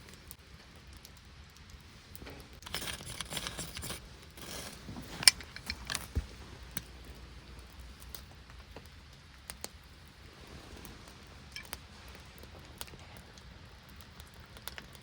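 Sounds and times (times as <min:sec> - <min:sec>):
faint rain patter: 0:00.0 - 0:15.0
gear rustling: 0:02.2 - 0:07.8.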